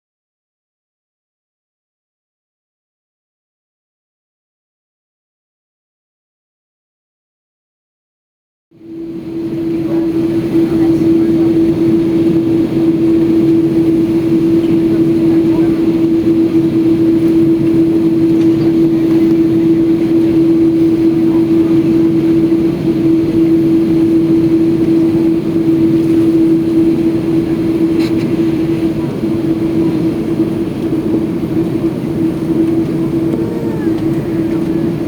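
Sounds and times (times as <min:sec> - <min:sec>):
jet engines droning in cabin: 0:08.8 - 0:35.0.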